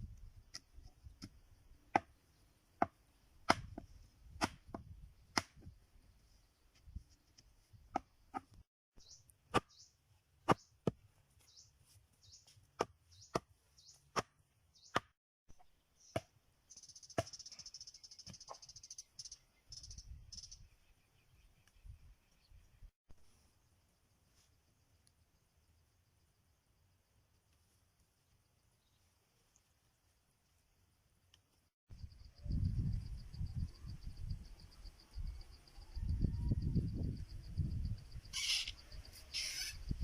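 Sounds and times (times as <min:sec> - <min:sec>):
sharp chops on wood: 0:01.2 - 0:02.1, 0:02.8 - 0:05.7, 0:09.5 - 0:09.8, 0:14.1 - 0:15.2
insects chirping: 0:16.7 - 0:21.0, 0:23.6 - 0:40.0.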